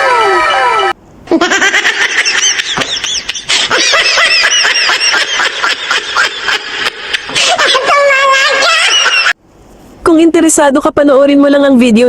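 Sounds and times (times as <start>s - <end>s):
high-pitched cartoon laugh: 1.3s - 9.4s.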